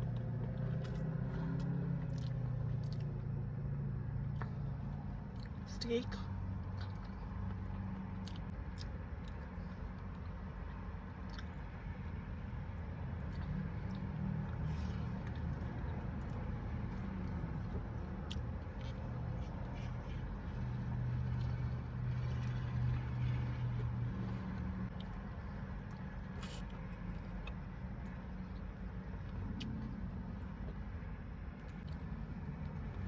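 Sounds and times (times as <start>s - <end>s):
person chewing and eating: 0.0s - 5.7s, 6.3s - 33.0s.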